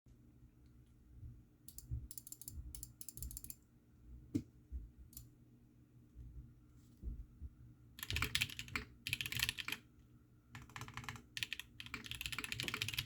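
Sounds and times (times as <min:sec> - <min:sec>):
mechanical keyboard typing: 0:08.0 - 0:09.8, 0:10.5 - 0:13.0.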